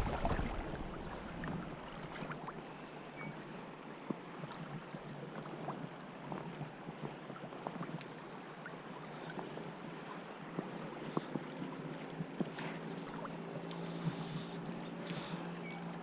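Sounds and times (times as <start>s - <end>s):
small splashes and clicks: 12.3s - 14.0s.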